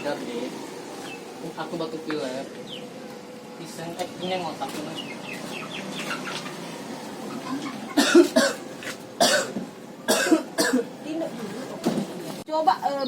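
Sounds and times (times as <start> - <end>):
person coughing: 8.0 - 8.6, 9.2 - 10.9.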